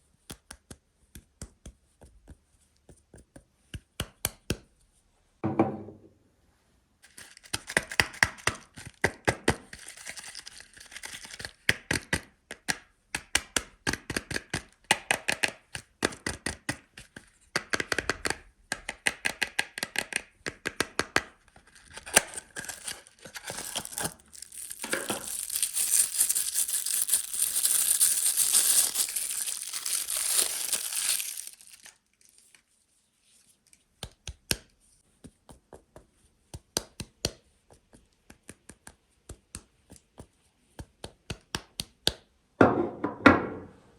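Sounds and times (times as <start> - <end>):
soap wrapper crinkling: 7.1 - 12.2, 19.8 - 32.7
wrapper tearing and rustling: 9.7 - 11.6, 21.7 - 32.7.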